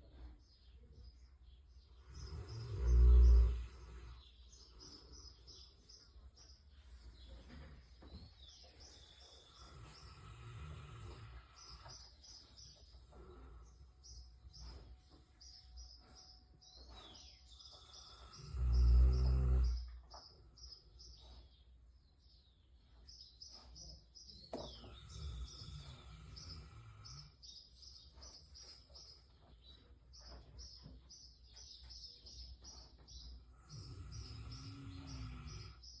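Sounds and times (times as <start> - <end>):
person snoring: 2.2 - 4.2, 17.9 - 19.8, 33.6 - 35.8.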